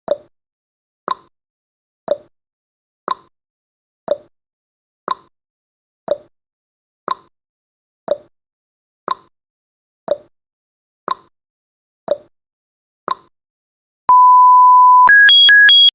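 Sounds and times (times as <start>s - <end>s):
steady high beep: 14.1s - 15.9s.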